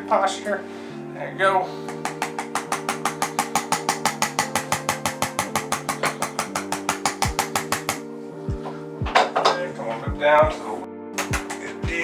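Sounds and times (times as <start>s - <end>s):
rapid percussive taps: 1.8s - 9.5s, 11.2s - 12.0s.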